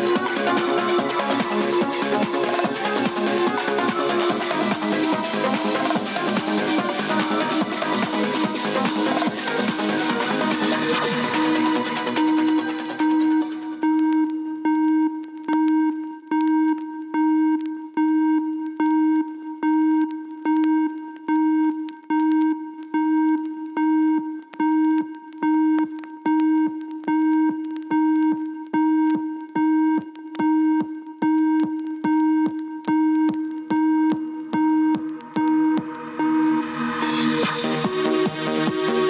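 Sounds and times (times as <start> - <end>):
drum machine kick: 0.0 - 15.7, 24.1 - 39.0
repeating synth note: 0.0 - 39.0.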